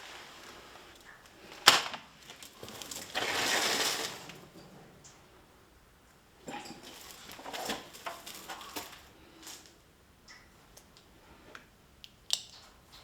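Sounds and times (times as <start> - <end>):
rustling scrape: 2.3 - 4.6.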